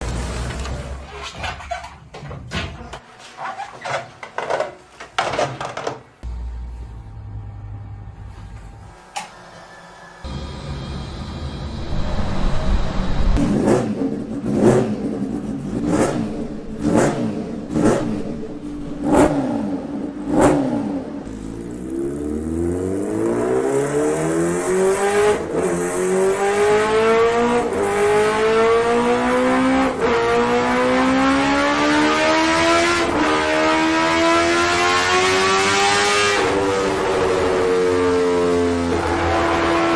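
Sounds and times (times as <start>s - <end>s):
motorcycle engine revving: 10.2s - 39.9s.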